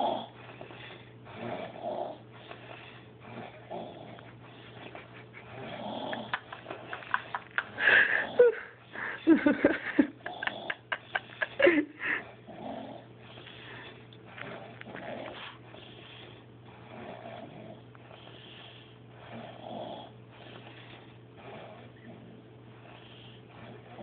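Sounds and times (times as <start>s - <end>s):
man snoring: 0.0s - 0.3s, 1.3s - 2.2s, 3.2s - 4.2s, 5.5s - 6.5s, 7.8s - 8.6s, 10.2s - 11.2s, 12.5s - 13.1s, 16.8s - 20.5s, 21.4s - 24.0s
steady low hum: 0.0s - 24.0s.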